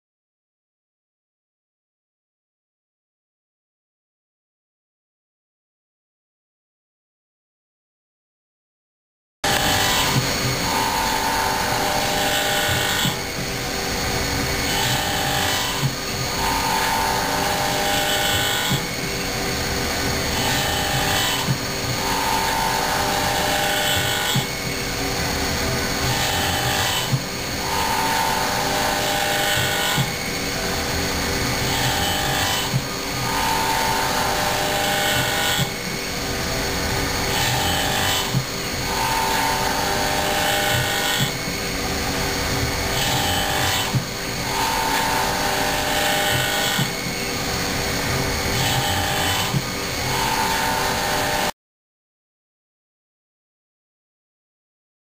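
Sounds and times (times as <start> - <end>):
machining spindle whine: 9.5 - 51.5.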